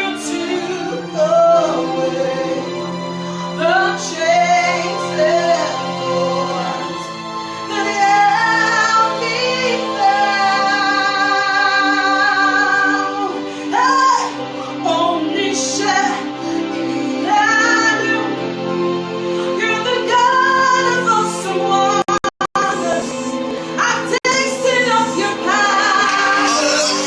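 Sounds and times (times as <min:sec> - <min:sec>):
woman singing: 0:00.0 - 0:02.6, 0:07.7 - 0:16.2, 0:19.6 - 0:27.0
sustained accompaniment chords: 0:21.8 - 0:25.0.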